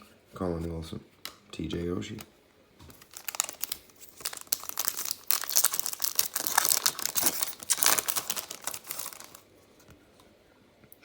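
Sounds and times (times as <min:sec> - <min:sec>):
foil wrapper tearing and crinkling: 0:02.9 - 0:09.4.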